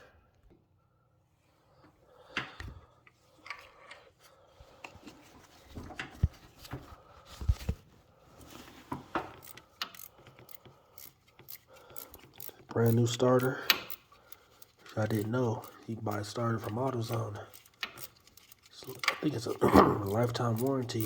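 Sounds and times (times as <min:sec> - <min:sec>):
hand tools clinking on metal: 0:11.4 - 0:21.0.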